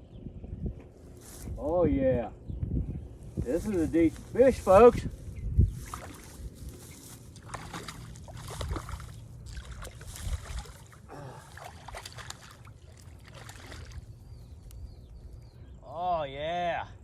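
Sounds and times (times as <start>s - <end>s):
wind buffeting microphone: 0.0s - 15.8s
water splashing: 7.3s - 14.2s.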